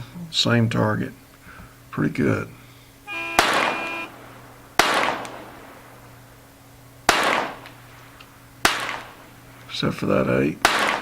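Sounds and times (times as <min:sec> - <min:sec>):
pistol shots: 0:03.1 - 0:11.0.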